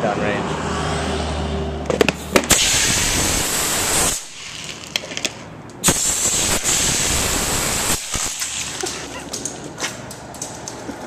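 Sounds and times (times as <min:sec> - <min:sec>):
rush of compressed air: 0:02.5 - 0:04.5, 0:05.8 - 0:08.7.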